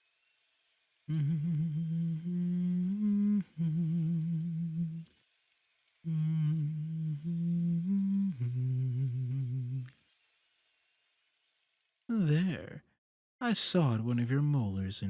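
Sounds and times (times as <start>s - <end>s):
faint high whine: 0.0s - 15.0s
man humming a slow tune: 1.1s - 5.1s, 6.0s - 10.0s, 12.1s - 12.8s.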